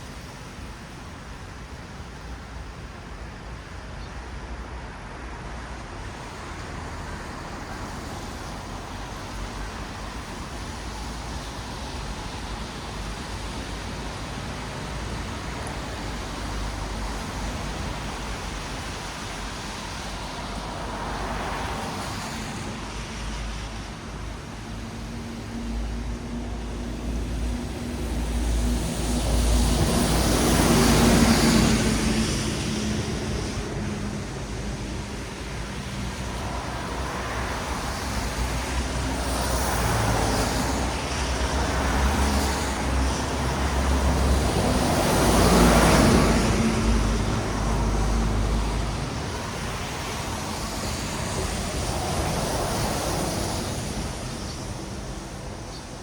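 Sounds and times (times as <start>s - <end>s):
tyre hiss on wet asphalt: 5.6s - 25.9s, 26.6s - 56.0s.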